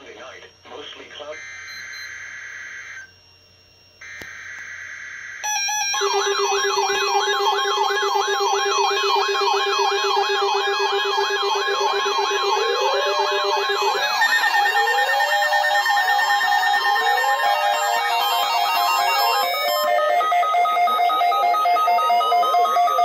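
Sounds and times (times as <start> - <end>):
shrill digital data tones: 0.2 - 23.0
warbling electronic alert tone: 5.4 - 23.0.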